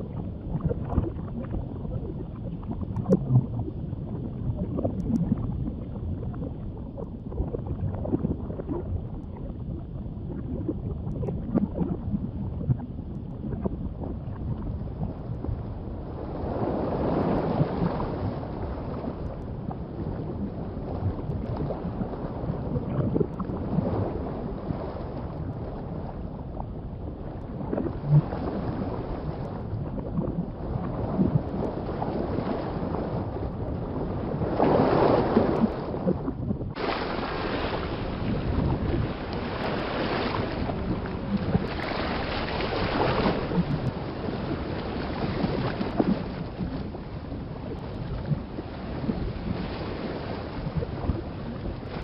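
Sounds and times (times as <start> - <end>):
muffled underwater water rushing: 0.0 - 52.0.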